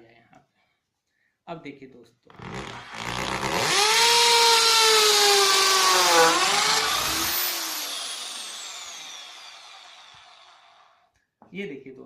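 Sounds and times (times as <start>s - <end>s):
electric drill boring wood: 2.4s - 11.0s.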